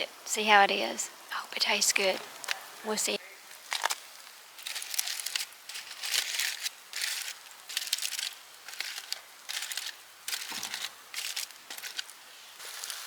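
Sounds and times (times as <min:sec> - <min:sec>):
aluminium foil crinkling: 0:03.4 - 0:13.0.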